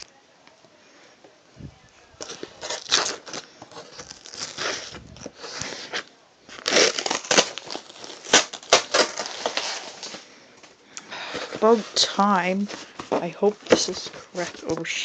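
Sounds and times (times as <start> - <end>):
packaging torn and crumpled: 2.2 - 10.2.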